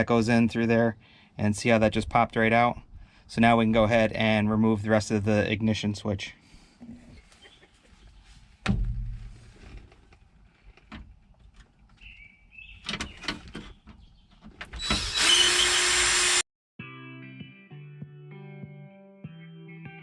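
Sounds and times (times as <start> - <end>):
heavy thump: 8.6 - 9.5
power drill running: 14.8 - 16.4
music: 16.8 - 20.0.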